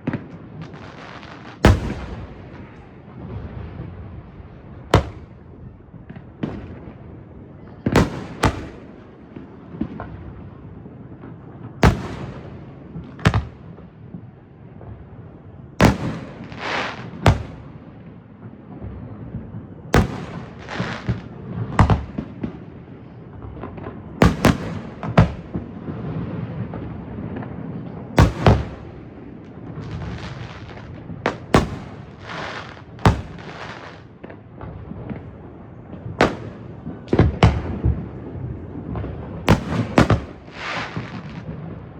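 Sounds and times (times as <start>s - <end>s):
fireworks hiss and crackle: 0.0s - 5.4s, 11.8s - 13.6s, 15.8s - 17.8s, 20.0s - 22.6s, 28.2s - 35.5s, 36.2s - 41.8s
fireworks booming: 0.0s - 10.6s, 11.2s - 15.1s, 15.8s - 41.9s.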